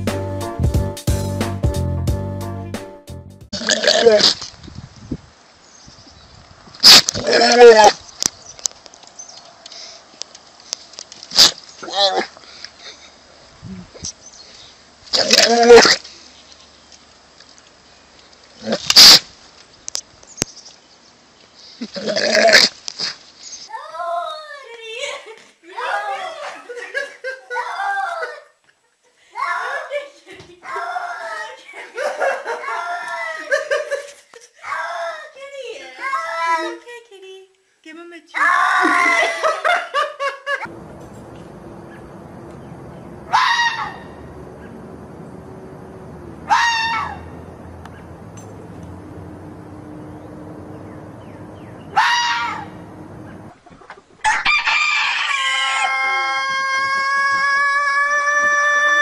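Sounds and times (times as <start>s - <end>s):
animal pitched cries: 3.6s - 4.4s, 6.9s - 8.0s, 15.1s - 16.0s, 43.3s - 44.8s, 46.2s - 48.2s, 51.8s - 53.5s
goat screaming: 3.6s - 4.4s, 6.9s - 8.0s, 15.1s - 16.0s, 22.0s - 22.7s, 43.3s - 44.7s, 46.4s - 47.4s, 51.8s - 52.9s
honk-like animal call: 43.3s - 44.8s, 46.4s - 48.2s, 51.7s - 53.5s.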